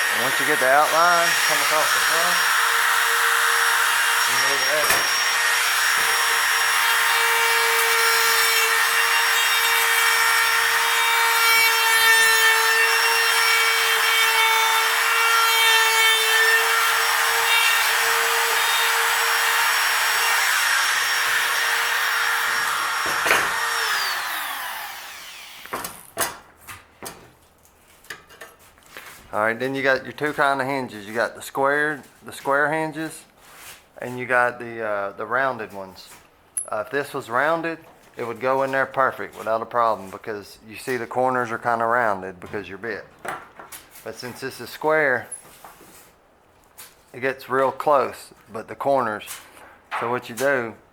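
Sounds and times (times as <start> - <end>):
router cutting wood: 0.0 - 25.9
router winding down whine: 16.7 - 25.7.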